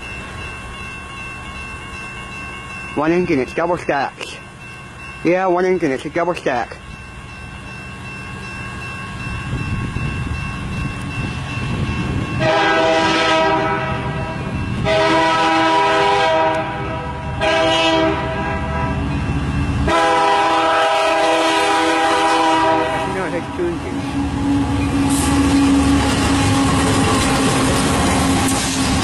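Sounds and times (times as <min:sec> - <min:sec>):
low rumble of train: 0:00.0 - 0:29.0
locomotive air horn blasts: 0:12.4 - 0:19.0, 0:19.9 - 0:23.3.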